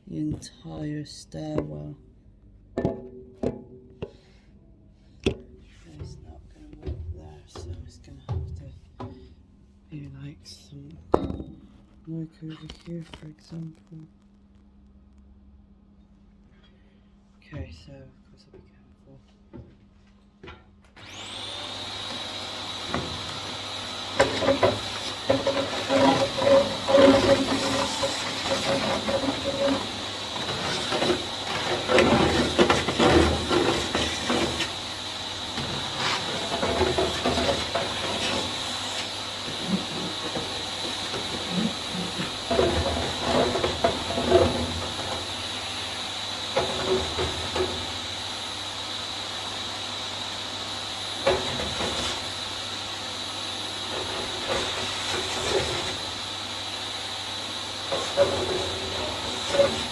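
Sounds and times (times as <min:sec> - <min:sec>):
vacuum cleaner motor whine: 0:20.9 - 0:59.9.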